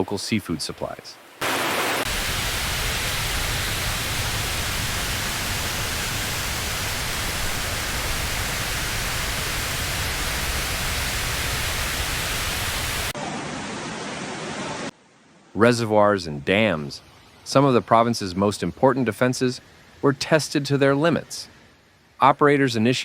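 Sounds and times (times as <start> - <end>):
loud broadband rushing noise: 1.4 - 14.9.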